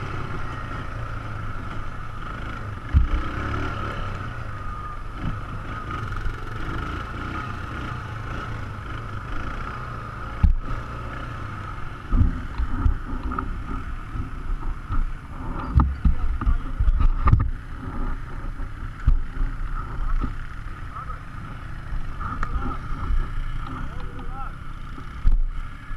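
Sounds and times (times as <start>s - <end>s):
atv engine droning: 0.0s - 25.9s
knocks and thumps from bumps: 2.9s - 3.2s, 10.4s - 10.8s, 12.1s - 20.4s.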